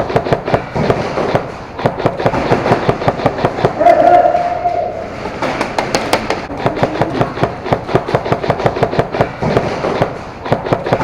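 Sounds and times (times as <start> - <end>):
airsoft guns firing: 0.0 - 4.8, 5.4 - 11.0.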